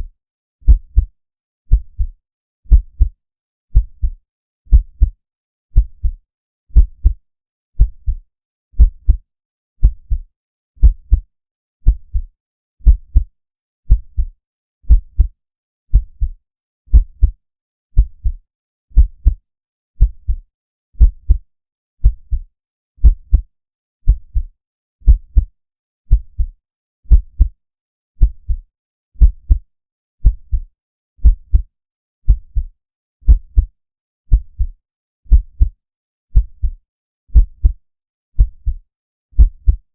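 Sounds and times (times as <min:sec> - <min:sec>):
slow deep heartbeat: 0:00.7 - 0:01.1, 0:01.7 - 0:07.2, 0:07.8 - 0:08.2, 0:08.8 - 0:09.2, 0:09.8 - 0:13.3, 0:13.9 - 0:14.3, 0:14.9 - 0:17.4, 0:18.0 - 0:18.4, 0:19.0 - 0:19.4, 0:20.0 - 0:20.4, 0:21.0 - 0:21.4, 0:22.0 - 0:22.4, 0:23.0 - 0:25.5, 0:26.1 - 0:27.6, 0:28.2 - 0:28.6, 0:29.2 - 0:29.6, 0:30.2 - 0:33.7, 0:34.3 - 0:34.7, 0:35.3 - 0:37.8, 0:38.4 - 0:38.8, 0:39.4 - 0:39.8.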